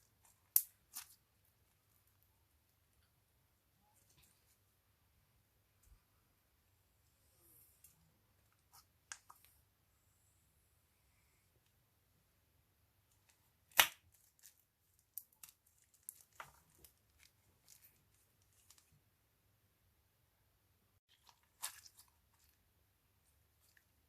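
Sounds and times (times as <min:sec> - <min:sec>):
slime snapping and crackling: 0:13.7 - 0:14.5.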